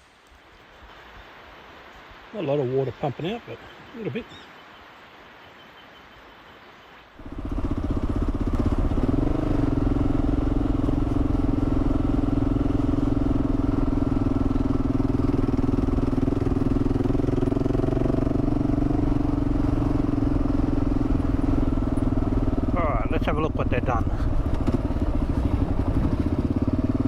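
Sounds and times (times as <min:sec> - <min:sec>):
motorcycle engine starting and running: 0:07.2 - 0:27.0.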